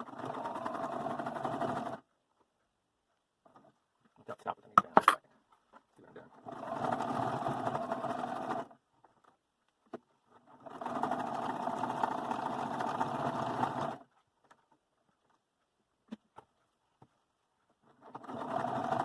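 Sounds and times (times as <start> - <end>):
sewing machine stitching: 0.0 - 2.0, 6.1 - 8.8, 10.3 - 14.1, 17.8 - 19.0.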